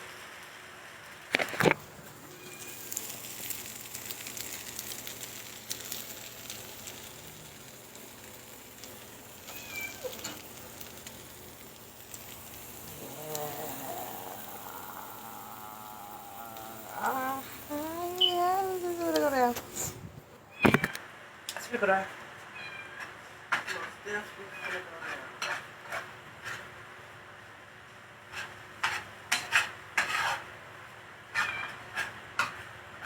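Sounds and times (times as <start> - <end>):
steady hiss with crackles: 0.0 - 33.0
faint voice: 12.9 - 20.0.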